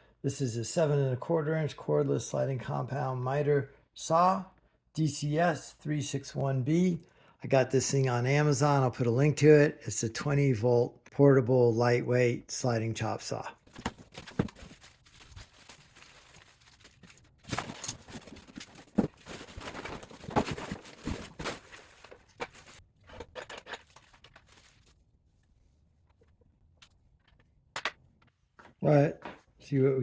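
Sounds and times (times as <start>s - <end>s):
cardboard packaging rustling: 13.6s - 25.2s.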